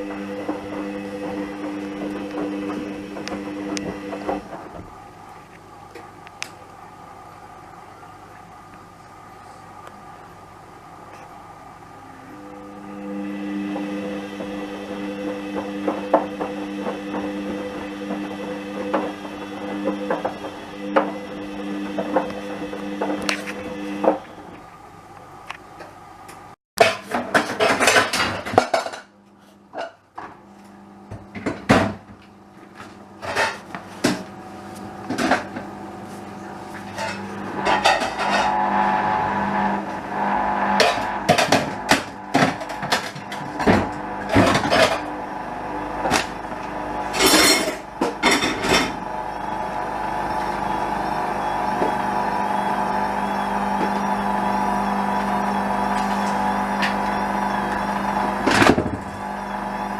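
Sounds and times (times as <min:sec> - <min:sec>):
washing machine motor whine: 0:00.0 - 0:59.9
washing machine clunks and knocks: 0:31.1 - 0:32.1, 0:58.5 - 0:59.1.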